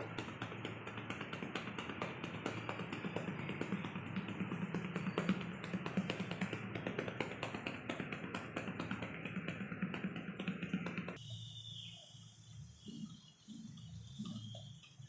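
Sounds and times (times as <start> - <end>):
hollow-hand tapping on chest: 0.0 - 11.2.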